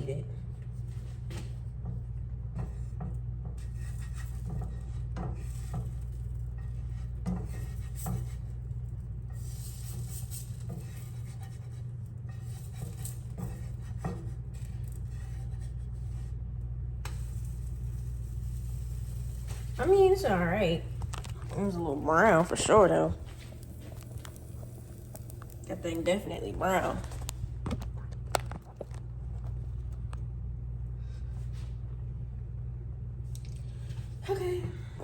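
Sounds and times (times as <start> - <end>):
steady low hum: 0.0 - 35.0
spatulas scraping a pan: 3.5 - 16.3.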